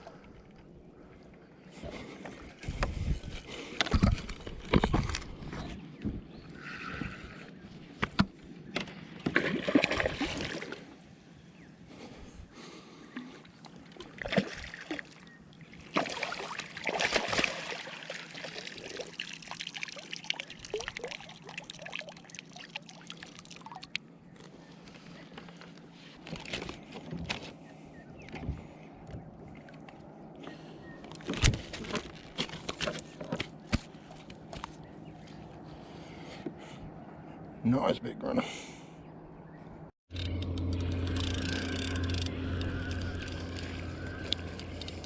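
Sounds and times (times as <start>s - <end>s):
water sloshing against a kayak: 0.0s - 37.5s.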